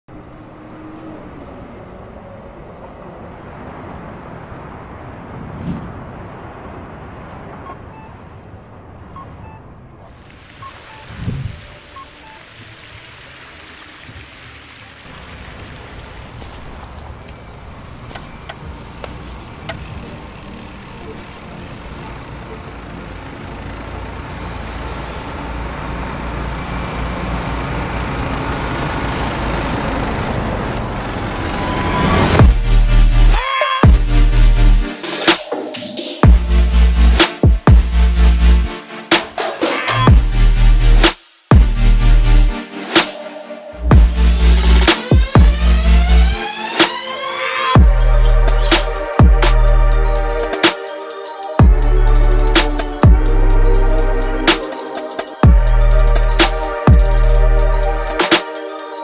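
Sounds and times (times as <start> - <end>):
city traffic noise: 0.0 - 59.0
motor vehicle rumble: 0.1 - 10.1, 11.1 - 34.8, 43.8 - 46.6, 47.8 - 50.6, 51.6 - 54.6, 55.4 - 58.2.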